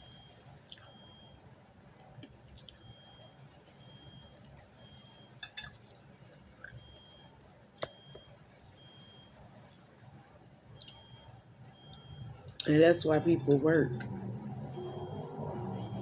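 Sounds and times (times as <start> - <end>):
chewing mouth sounds: 0.6 - 1.0, 2.2 - 2.9.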